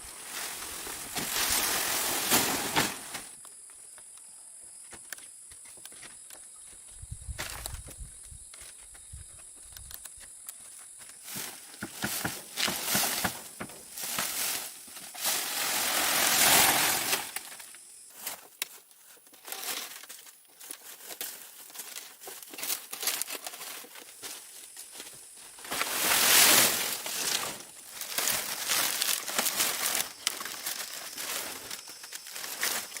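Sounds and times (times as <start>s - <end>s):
material rustling and crinkling: 0.0s - 3.4s, 19.4s - 33.0s.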